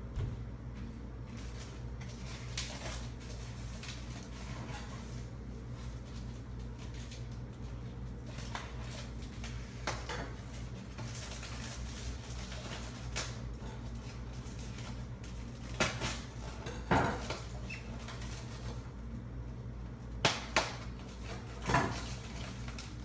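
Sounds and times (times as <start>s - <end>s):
steady low hum: 0.0s - 11.0s.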